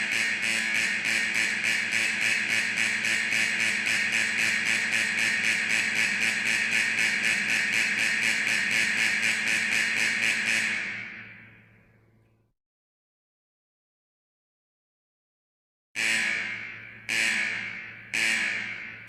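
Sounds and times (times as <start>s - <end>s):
pulsing factory alarm ringing: 0.0s - 12.0s, 16.0s - 19.0s.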